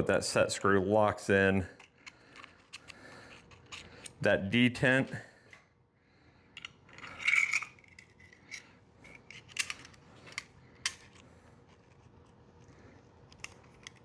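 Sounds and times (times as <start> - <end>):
hex key clicking and scraping: 1.8 - 4.2, 6.6 - 12.0, 13.3 - 14.0.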